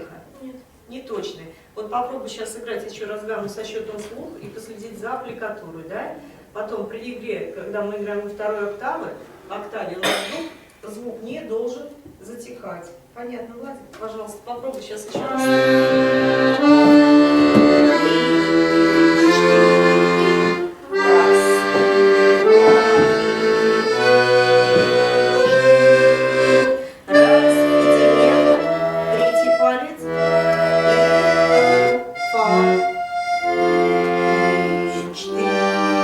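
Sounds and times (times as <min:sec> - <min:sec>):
accordion playing a scale: 0:15.2 - 0:36.0.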